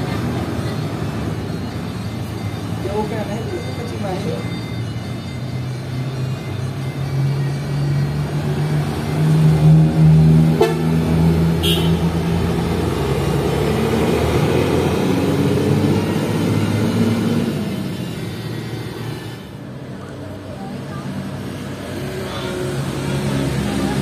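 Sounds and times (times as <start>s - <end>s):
bus engine running: 0.0s - 3.8s, 4.4s - 24.0s
multi-tone bus horn tune: 10.4s - 12.4s.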